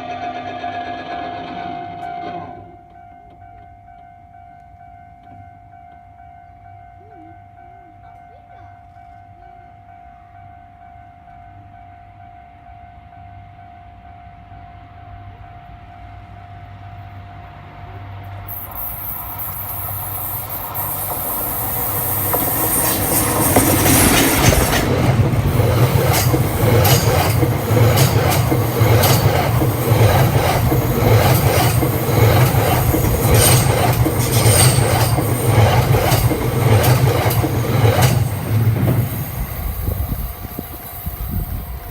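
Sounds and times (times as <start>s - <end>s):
crossing warning bell: 2.4s - 17.0s, 18.4s - 41.9s
high hiss of train: 14.4s - 41.9s
train wheels clattering: 18.4s - 41.9s.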